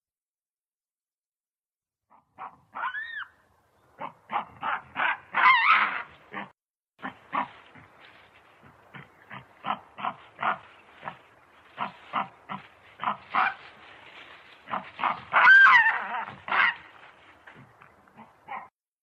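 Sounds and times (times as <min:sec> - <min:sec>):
baboon call rising and falling: 0:02.1 - 0:03.4, 0:14.7 - 0:16.9.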